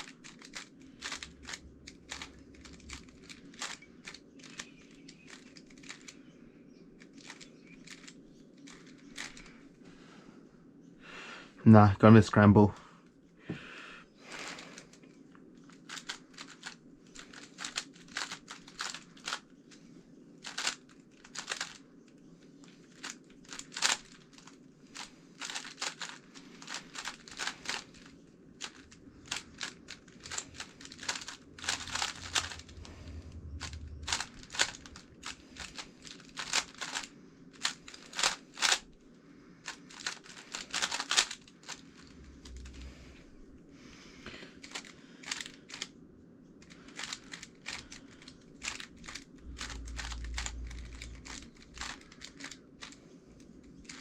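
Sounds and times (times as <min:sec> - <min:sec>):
speed cube plastic clicks: 0:00.0 - 0:06.2, 0:07.0 - 0:09.5, 0:15.6 - 0:19.5, 0:20.4 - 0:21.8, 0:22.8 - 0:38.9, 0:39.6 - 0:42.8, 0:44.6 - 0:45.9, 0:46.6 - 0:53.0, 0:53.8 - 0:54.0.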